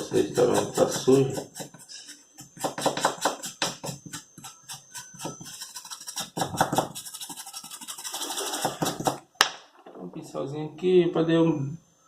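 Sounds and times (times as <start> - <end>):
small brush scrubbing: 0.0 - 9.0.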